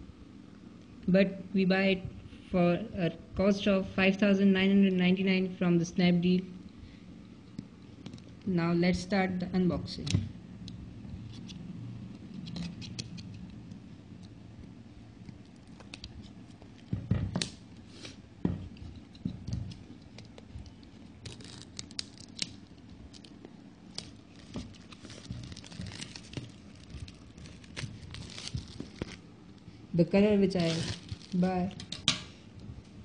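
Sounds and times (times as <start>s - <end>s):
package rustling and scratching: 11.1s - 13.7s, 14.7s - 17.0s, 17.7s - 29.6s, 30.4s - 32.0s.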